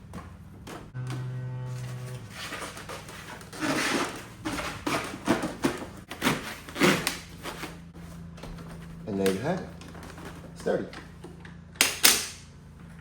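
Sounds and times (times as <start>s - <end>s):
styrofoam squeaking and scraping: 1.7s - 8.2s.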